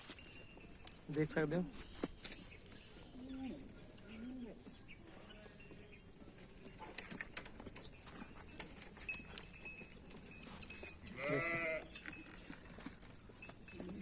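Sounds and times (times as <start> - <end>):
goat bleating: 11.1 - 11.9.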